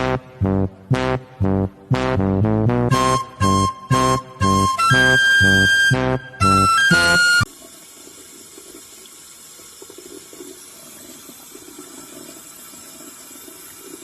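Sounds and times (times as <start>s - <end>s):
music note: 2.9s - 7.5s
faint running water: 7.4s - 14.0s.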